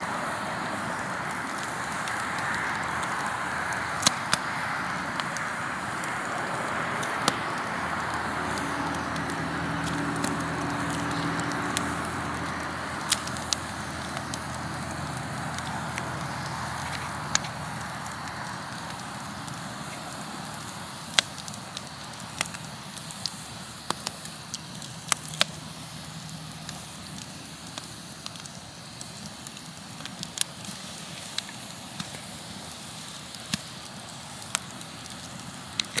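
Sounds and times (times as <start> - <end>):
hiss of burning: 0.0 - 36.0
wood fire crackling: 0.0 - 36.0.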